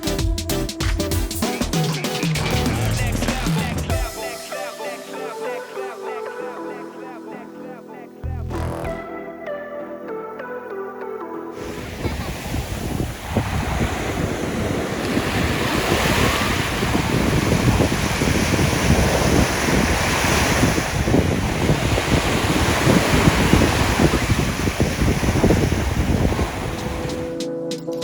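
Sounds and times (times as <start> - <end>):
ocean surf washing on beach: 11.6 - 27.4
wind buffeting microphone: 11.6 - 27.4.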